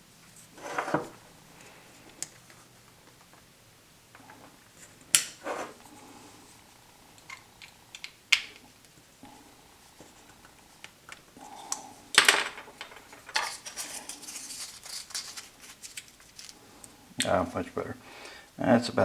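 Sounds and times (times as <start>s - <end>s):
scratchy scraping and rustling: 0.4s - 1.8s, 4.8s - 5.8s, 13.1s - 16.6s.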